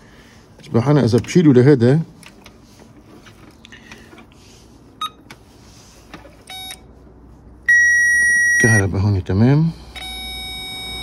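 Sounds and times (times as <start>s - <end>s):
circuit tester high beep: 6.5s - 6.9s, 7.7s - 8.9s, 9.9s - 11.0s
short buzzing beep: 7.7s - 8.8s.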